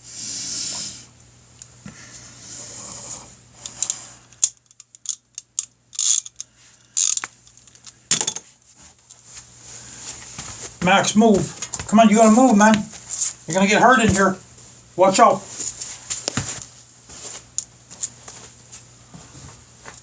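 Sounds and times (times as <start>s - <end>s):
sharp clicks and metallic clinks: 3.7s - 8.4s.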